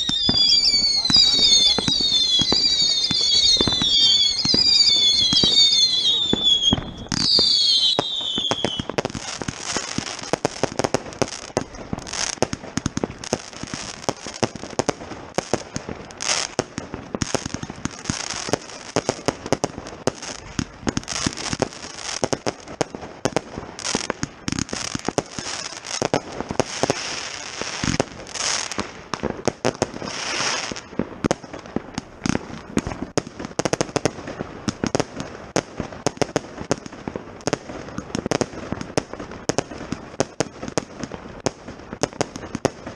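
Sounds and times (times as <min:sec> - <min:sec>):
loud firework reports: 0:00.0 - 0:15.0, 0:23.7 - 0:30.9
fireworks crackling and popping: 0:00.0 - 0:42.9.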